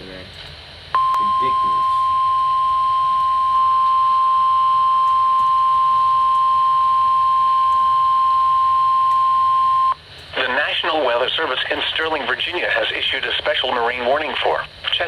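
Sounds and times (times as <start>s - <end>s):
steady warning alarm tone: 1.0s - 10.0s.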